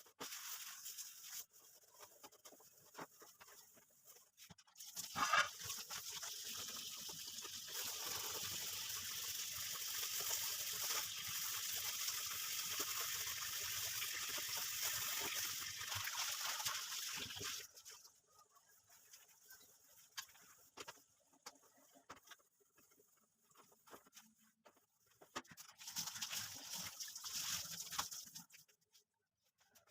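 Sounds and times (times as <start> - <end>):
tap water running into sink: 4.8 - 17.8, 25.6 - 28.6.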